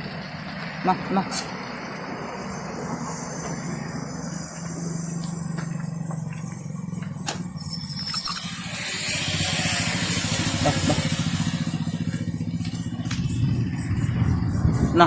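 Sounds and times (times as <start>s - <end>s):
loud high-pitched squeal: 7.6s - 12.1s.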